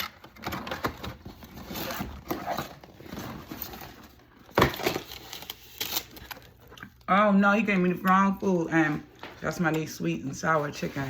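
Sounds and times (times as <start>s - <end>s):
food packaging rustling: 0.0s - 7.0s.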